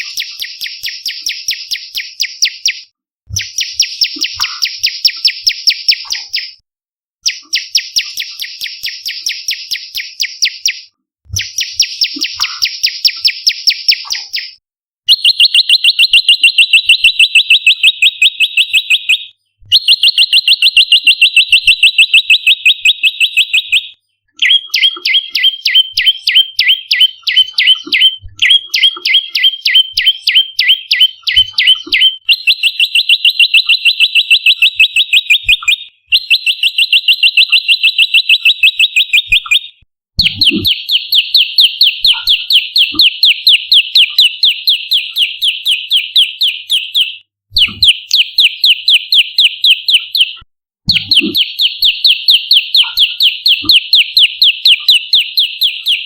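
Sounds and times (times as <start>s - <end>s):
bird calling with rapid chip notes: 0.0s - 6.6s, 7.2s - 56.0s.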